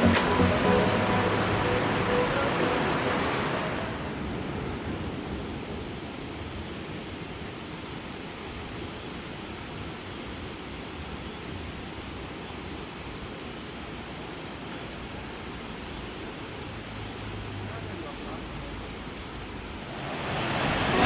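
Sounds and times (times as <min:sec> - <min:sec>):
stream flowing over rocks: 0:00.0 - 0:04.2, 0:19.0 - 0:21.0.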